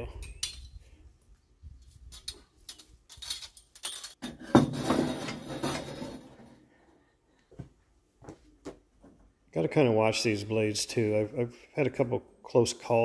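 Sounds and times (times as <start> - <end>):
scraping metal rattle: 3.1 - 6.5.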